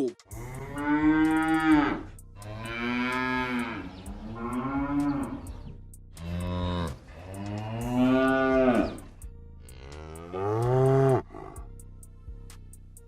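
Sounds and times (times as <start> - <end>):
cow mooing: 0.4 - 5.6, 6.2 - 9.1, 9.7 - 11.6.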